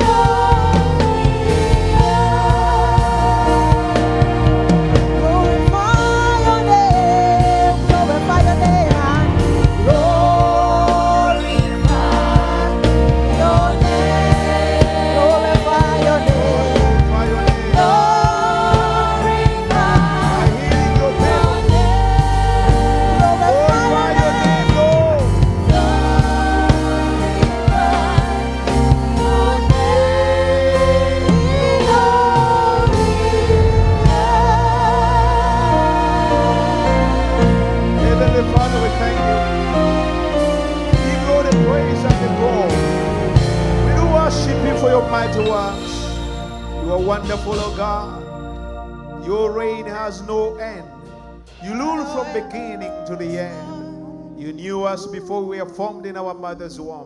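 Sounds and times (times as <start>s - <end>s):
band with bass and drums: 0.0s - 49.2s.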